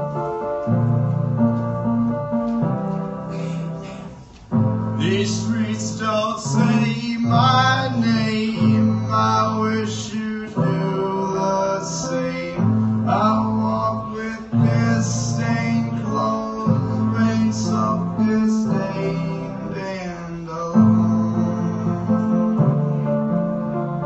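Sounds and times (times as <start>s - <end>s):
keyboard chords: 0.0s - 24.0s
person singing: 5.0s - 23.5s.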